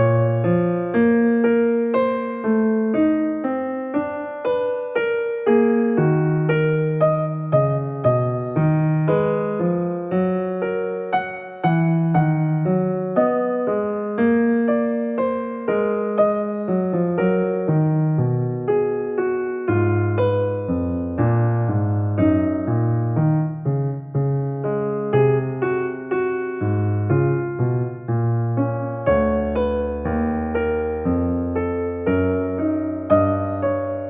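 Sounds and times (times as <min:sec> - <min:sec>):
piano melody: 0:00.0 - 0:34.0.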